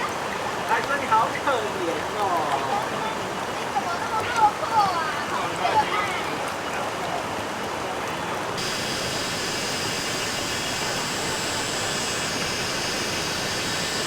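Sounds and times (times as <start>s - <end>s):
high-pitched whine: 8.6s - 14.0s
stream water rushing: 8.6s - 14.0s.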